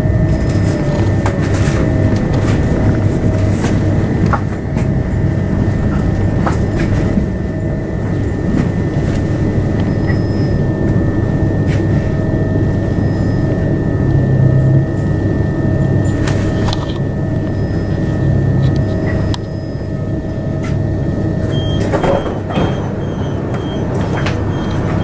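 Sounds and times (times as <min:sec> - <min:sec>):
wheels clicking over rails: 0:00.0 - 0:07.4, 0:21.4 - 0:25.0
train rumble: 0:00.0 - 0:25.0
train whine: 0:00.0 - 0:25.0.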